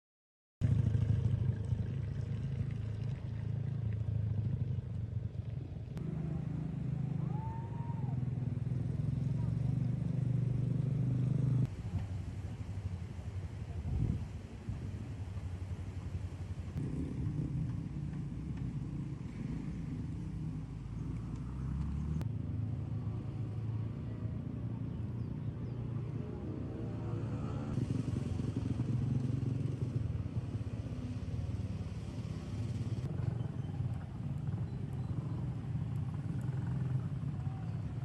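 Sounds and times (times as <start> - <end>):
vehicle engines on road: 0.6 - 38.0
engine revving: 6.0 - 11.7, 16.8 - 24.6, 25.8 - 38.0.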